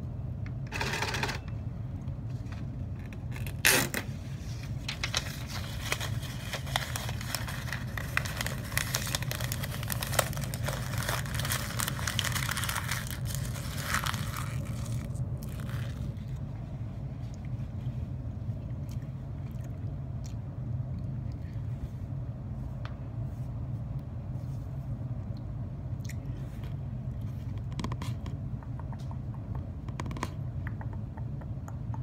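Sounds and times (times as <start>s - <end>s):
low steady hum: 0.0s - 32.0s
crinkling scraping handling noise: 2.3s - 16.5s.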